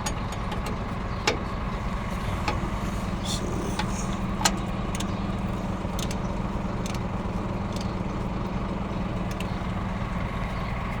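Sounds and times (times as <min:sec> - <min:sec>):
machinery humming: 0:00.5 - 0:07.4
light sharp ticks: 0:06.8 - 0:07.1.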